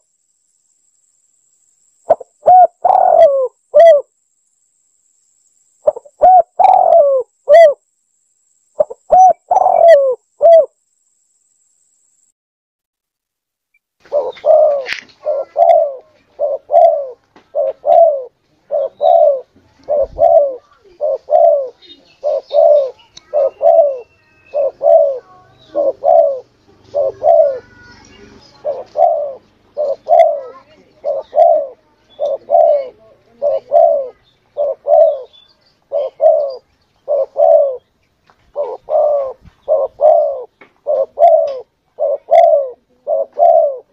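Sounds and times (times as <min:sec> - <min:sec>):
dove cooing: 0:02.1 - 0:04.1, 0:05.8 - 0:07.8, 0:08.8 - 0:10.8, 0:14.0 - 0:37.9, 0:38.5 - 0:43.9.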